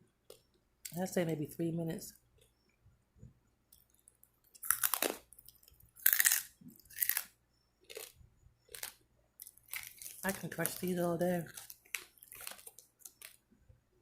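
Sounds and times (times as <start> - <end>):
person crunching pork rinds: 3.7 - 13.4.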